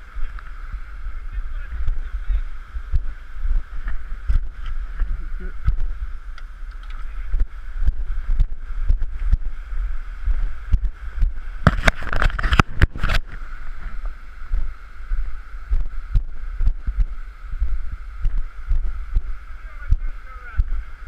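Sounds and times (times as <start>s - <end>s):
running water rushing: 0.0s - 21.0s
wind buffeting microphone: 0.0s - 21.0s
burst of noise and clicks: 10.7s - 14.2s.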